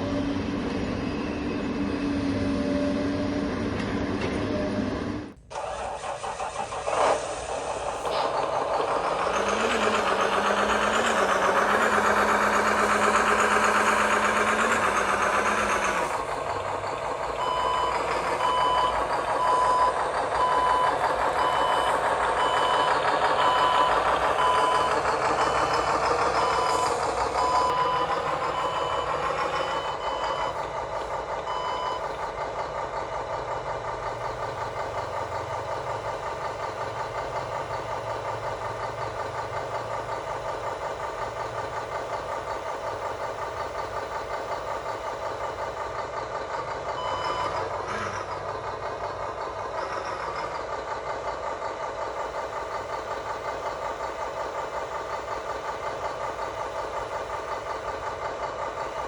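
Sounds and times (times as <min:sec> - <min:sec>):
toy truck engine running: 0:05.5 - 0:59.0
reversing beeper: 0:17.4 - 0:30.7, 0:31.5 - 0:32.2, 0:47.0 - 0:47.6.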